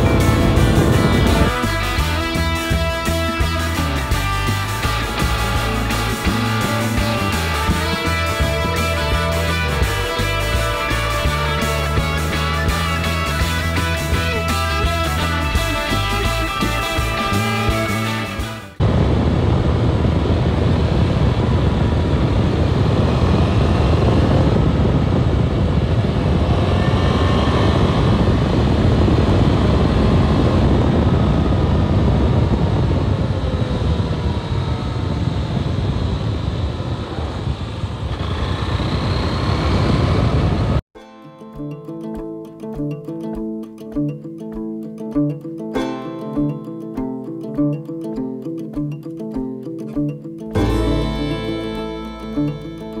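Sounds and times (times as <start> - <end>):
wind rush over microphone: 0.0 - 3.0, 18.8 - 40.8
motorcycle engine: 0.0 - 40.8.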